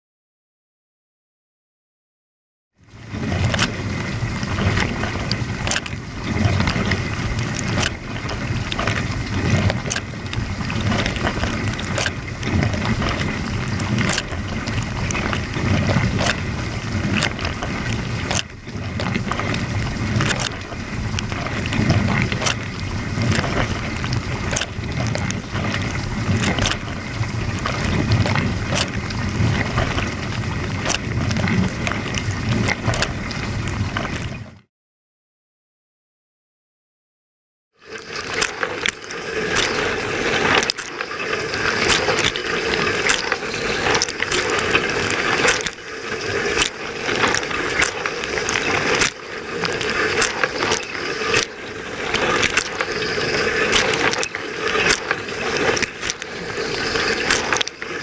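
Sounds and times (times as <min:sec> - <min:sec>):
water spraying in dishwasher: 0:37.8 - 0:58.0.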